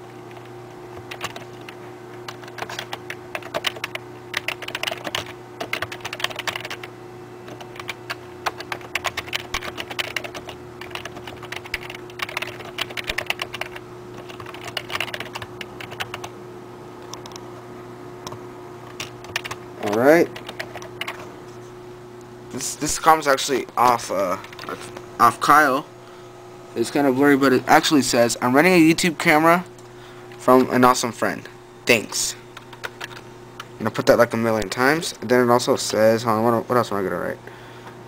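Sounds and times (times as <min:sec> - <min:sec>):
steady electrical hum: 0:00.0 - 0:38.0
keyboard typing clicks: 0:00.3 - 0:06.9, 0:07.5 - 0:16.3, 0:17.0 - 0:17.4, 0:18.2 - 0:21.2, 0:32.6 - 0:33.2.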